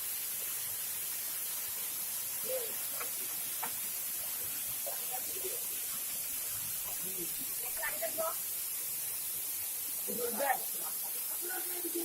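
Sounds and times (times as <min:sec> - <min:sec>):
rushing water hiss: 0:00.0 - 0:12.0.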